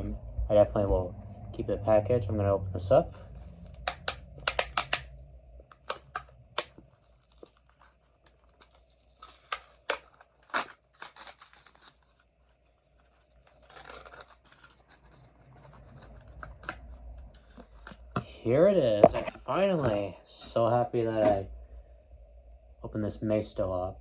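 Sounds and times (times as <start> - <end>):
packaging tearing and rustling: 3.4 - 18.1
packaging clicks and snaps: 3.7 - 12.1.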